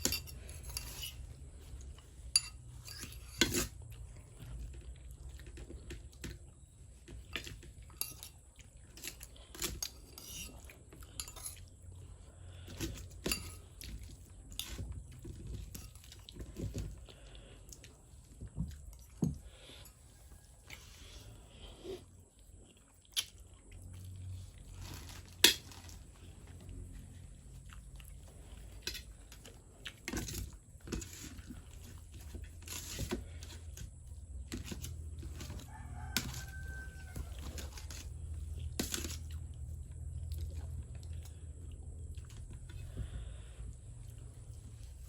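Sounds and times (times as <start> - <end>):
rooster crowing: 35.4 - 37.7.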